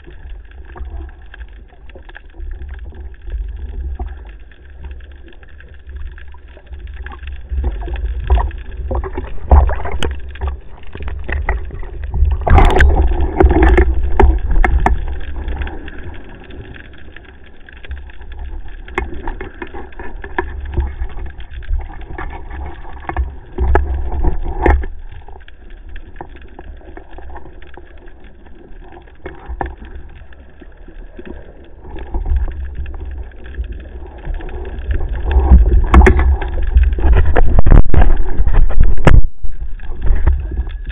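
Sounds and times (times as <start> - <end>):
water sloshing underwater: 0.0 - 40.9
clicks and knocks: 7.8 - 15.6, 34.2 - 40.9
heavy low rumble: 34.1 - 40.9.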